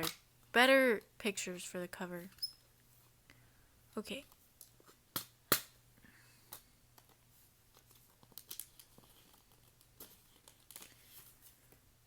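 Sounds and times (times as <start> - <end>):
packaging crinkling: 7.7 - 11.4.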